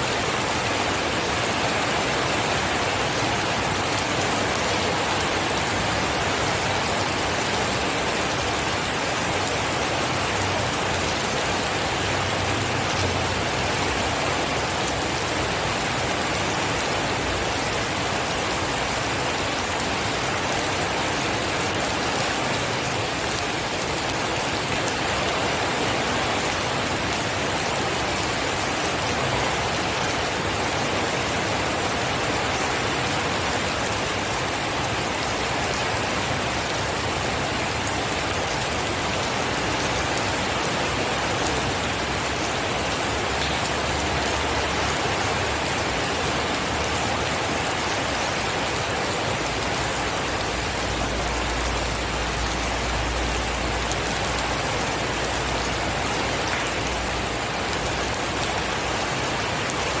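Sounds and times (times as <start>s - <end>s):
heavy rain falling: 0.0s - 60.0s.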